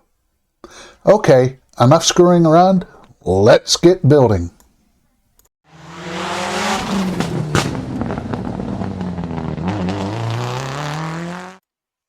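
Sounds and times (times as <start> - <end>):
racing car engine high revs: 5.7 - 11.6
sharp crack: 6.7 - 9.6.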